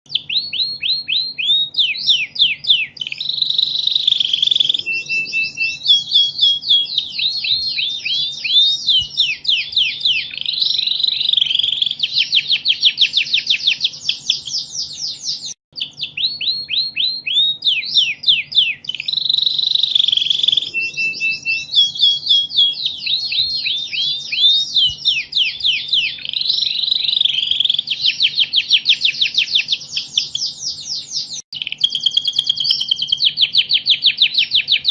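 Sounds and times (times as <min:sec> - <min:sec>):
canary singing: 0:00.1 - 0:34.9.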